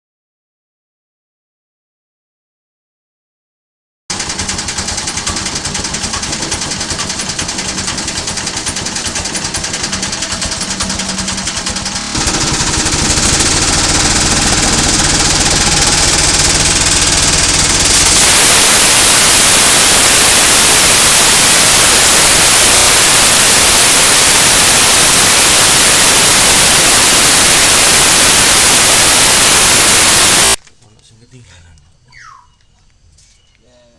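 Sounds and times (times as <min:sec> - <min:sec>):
grinding machine running: 0:04.1 - 0:30.6.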